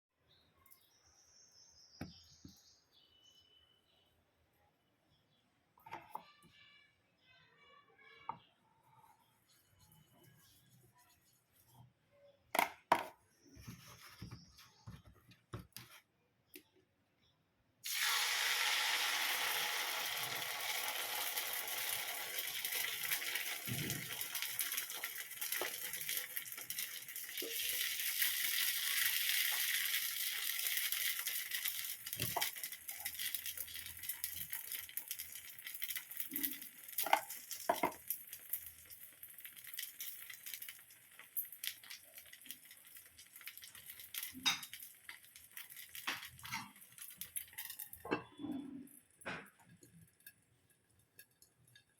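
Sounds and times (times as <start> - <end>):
batter sizzling on hot surface: 17.8 - 48.3.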